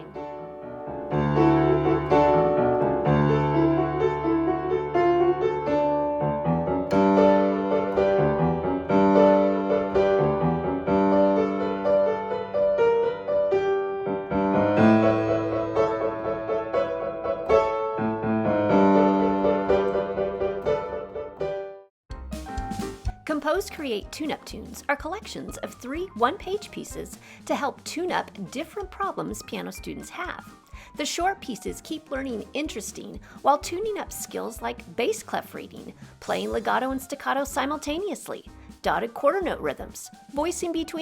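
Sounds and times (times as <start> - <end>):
solo piano piece: 0.0 - 23.2.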